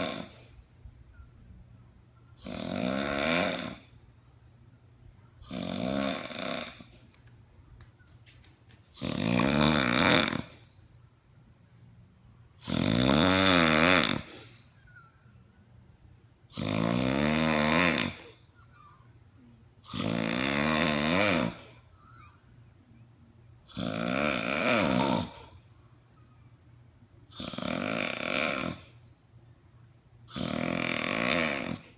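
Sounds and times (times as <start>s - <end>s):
person snoring loudly: 0.0s - 0.5s, 2.4s - 3.9s, 5.4s - 7.0s, 9.0s - 10.6s, 12.6s - 14.6s, 16.5s - 18.9s, 19.9s - 21.7s, 23.7s - 25.6s, 27.3s - 28.9s, 30.3s - 31.9s.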